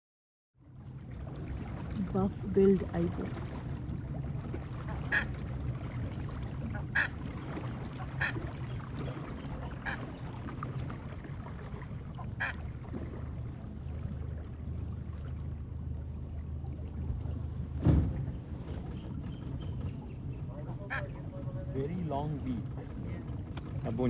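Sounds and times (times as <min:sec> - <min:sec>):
low engine hum: 0:00.6 - 0:24.0
ibis honking calls: 0:04.7 - 0:10.4, 0:12.0 - 0:12.9, 0:20.6 - 0:21.3.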